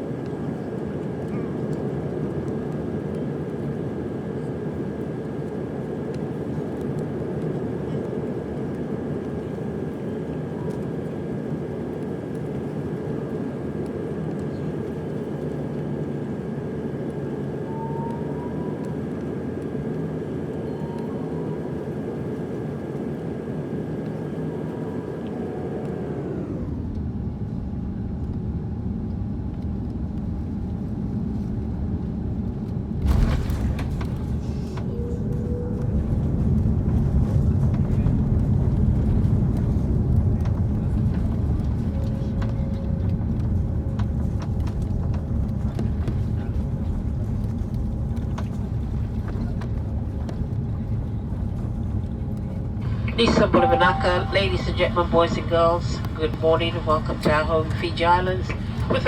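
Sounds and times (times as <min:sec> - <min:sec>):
aircraft engine and airflow noise: 0:00.0 - 0:59.0
high engine whine: 0:00.2 - 0:27.9, 0:51.0 - 0:59.0.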